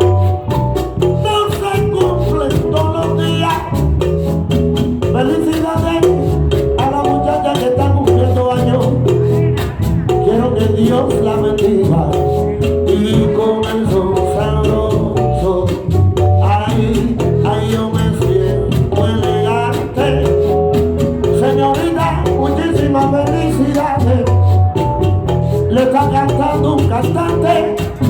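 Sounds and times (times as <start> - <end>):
salsa band music: 0.0 - 28.0.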